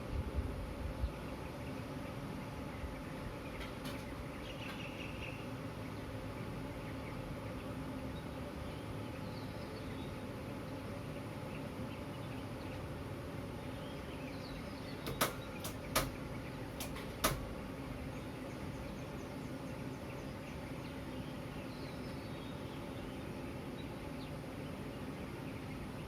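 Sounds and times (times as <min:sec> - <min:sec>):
faint bird chirps: 0:01.0 - 0:17.0
sharp clicks or knocks: 0:15.0 - 0:16.2, 0:16.8 - 0:17.5.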